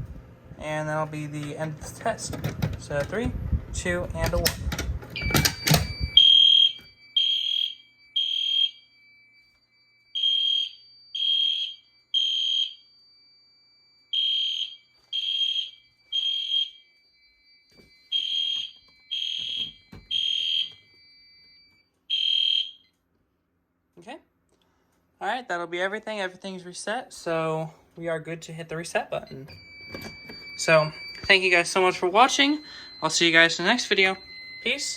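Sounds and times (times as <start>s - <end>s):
fire alarm horns beeping: 5.2s - 23.0s, 29.2s - 34.9s.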